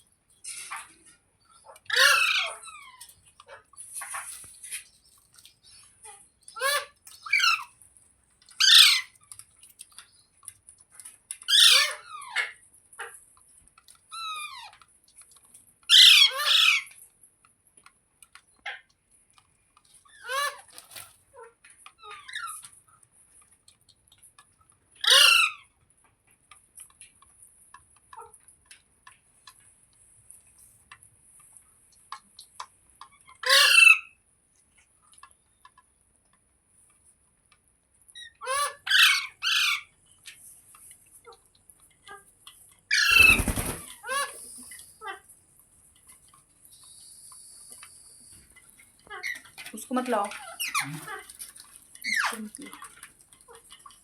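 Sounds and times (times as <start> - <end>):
parrot squawking: 1.6 - 4.2, 8.6 - 9.2, 11.5 - 12.5, 15.9 - 16.9, 25.0 - 25.6, 33.4 - 34.1, 38.4 - 39.9, 42.9 - 45.2.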